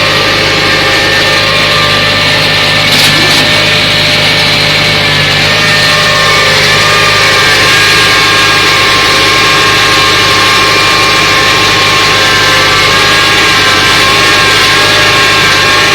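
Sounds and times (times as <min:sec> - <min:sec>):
harvester machinery rushing: 0:00.0 - 0:15.9
tractor engine running: 0:00.0 - 0:15.9
short rattles: 0:02.7 - 0:04.0.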